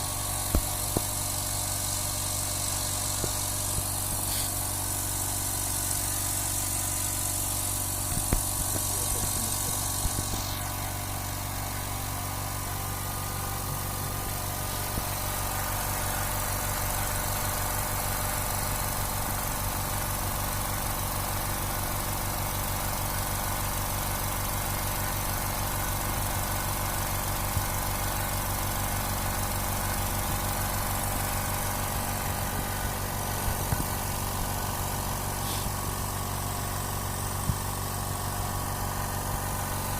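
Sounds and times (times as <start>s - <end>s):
high hiss: 0.0s - 17.5s, 31.0s - 36.0s
air compressor motor running: 0.0s - 39.9s.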